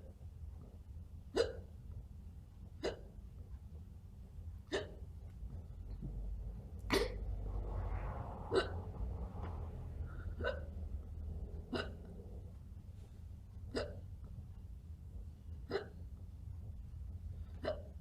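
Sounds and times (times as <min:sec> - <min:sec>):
person hiccuping: 0:01.3 - 0:01.7, 0:02.8 - 0:03.2, 0:04.7 - 0:05.1, 0:06.9 - 0:07.2, 0:10.4 - 0:10.7, 0:11.7 - 0:12.1, 0:13.7 - 0:14.1, 0:15.6 - 0:16.0, 0:17.6 - 0:18.0.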